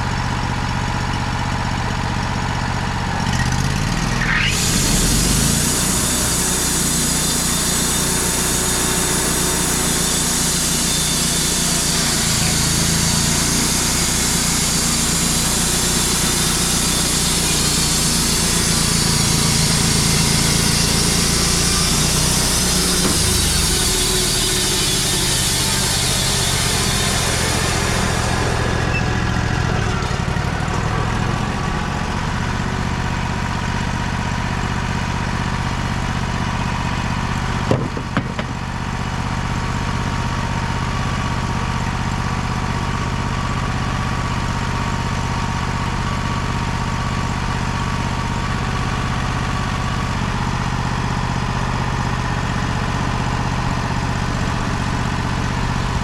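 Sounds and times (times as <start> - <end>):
engine idling: 0.0 - 5.6, 7.5 - 56.0
sharp knocks: 23.0 - 23.6, 37.7 - 38.6.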